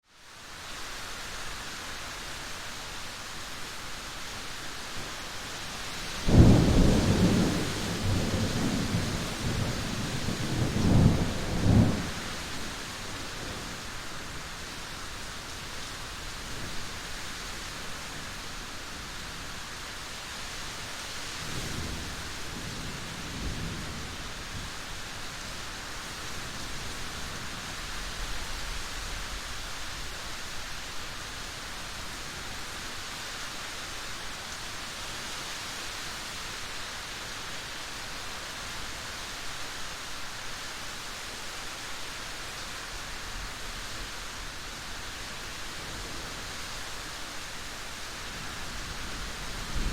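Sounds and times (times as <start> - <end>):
steady rain falling: 0.0 - 49.9
thunder rumbling: 6.2 - 12.5.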